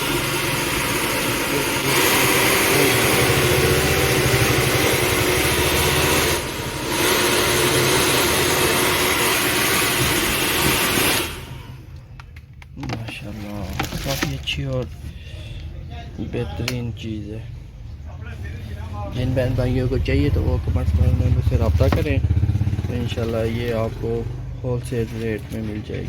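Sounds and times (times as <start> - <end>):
hair dryer running: 0.0 - 11.9.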